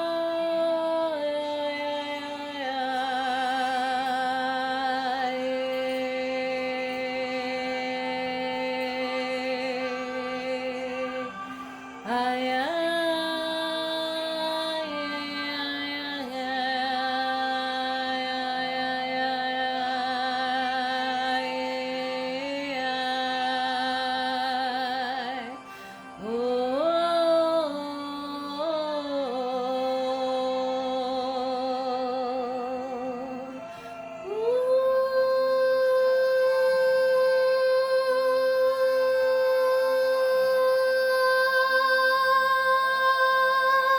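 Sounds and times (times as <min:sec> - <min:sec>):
person singing wordlessly: 0:26.2 - 0:43.9.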